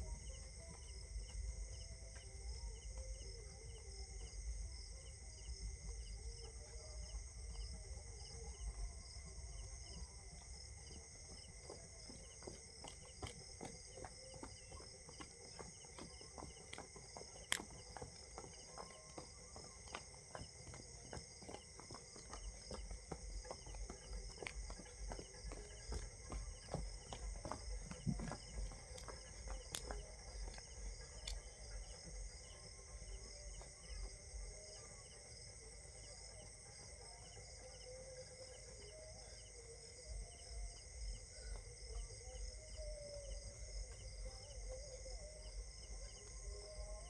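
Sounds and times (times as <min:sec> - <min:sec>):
crickets chirping: 0:00.0 - 0:47.0
light taps and thumps: 0:11.7 - 0:32.2.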